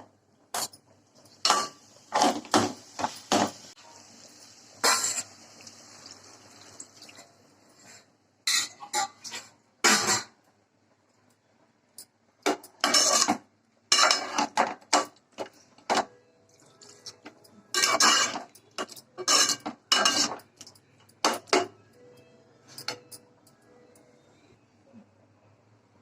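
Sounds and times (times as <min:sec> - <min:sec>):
metal utensil scraping a pot: 0:04.8 - 0:05.3, 0:12.8 - 0:14.7, 0:16.8 - 0:20.6.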